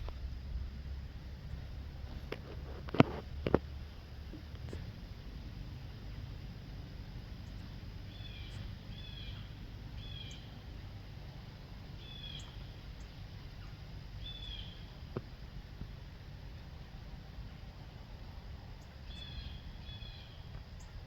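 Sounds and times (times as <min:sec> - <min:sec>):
low background rumble: 0:00.0 - 0:21.0
small bird chirping: 0:07.4 - 0:11.2, 0:11.9 - 0:15.2, 0:18.7 - 0:21.0.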